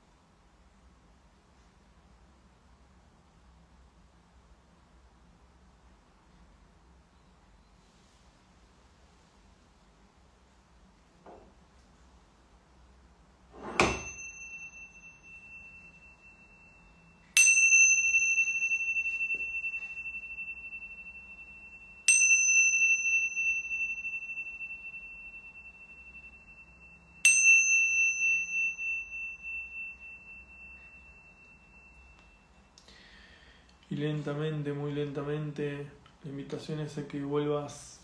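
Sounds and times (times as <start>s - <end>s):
meditation bell ringing: 13.6s - 33.6s.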